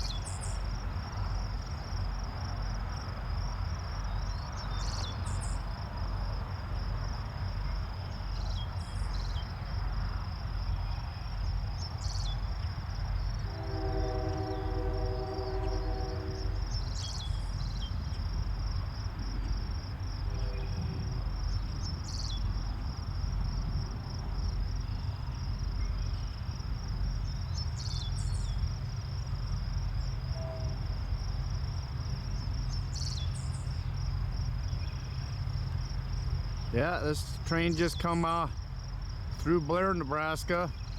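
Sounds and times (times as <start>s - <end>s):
freight train rumbling past: 0.0s - 40.9s
insects buzzing: 0.0s - 40.9s
train horn chord: 13.3s - 17.1s, 20.2s - 21.1s, 30.0s - 31.4s.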